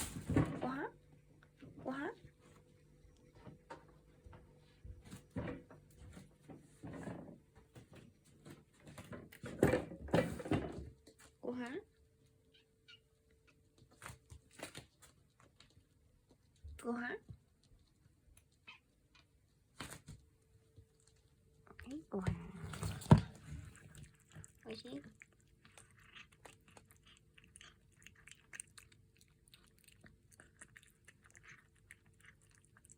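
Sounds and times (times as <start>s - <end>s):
kitten chewing and crunching: 13.1s - 32.9s.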